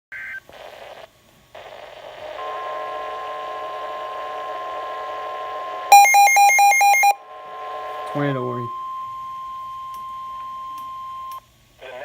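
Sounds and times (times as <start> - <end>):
radio hiss: 0.1 - 5.9, 11.8 - 12.0
steady warning alarm tone: 5.9 - 11.4.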